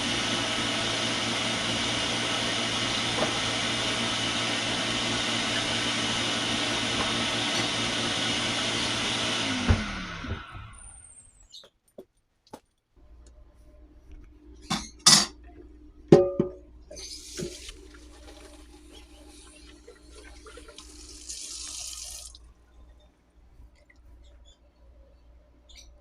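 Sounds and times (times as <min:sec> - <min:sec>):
knocks on metal pot: 0:16.1 - 0:16.6
metal pot clanging: 0:16.1 - 0:16.6
kitchen tap running: 0:16.9 - 0:22.5.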